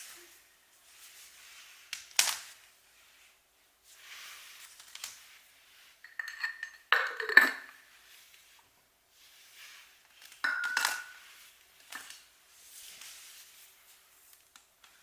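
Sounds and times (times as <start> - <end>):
crockery knocking and clinking: 6.1 - 7.8, 10.4 - 11.2.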